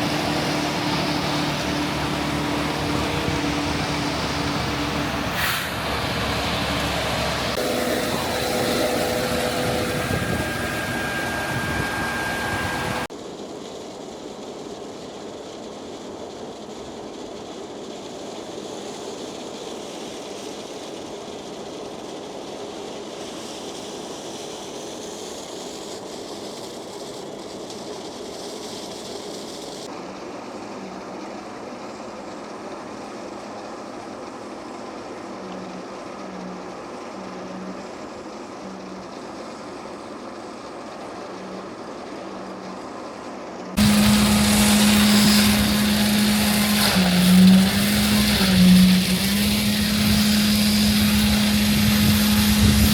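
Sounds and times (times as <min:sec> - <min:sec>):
heavy machinery running: 0:00.0 - 0:13.1, 0:34.8 - 0:52.9
machine whine and hum: 0:00.0 - 0:28.3, 0:28.9 - 0:52.9.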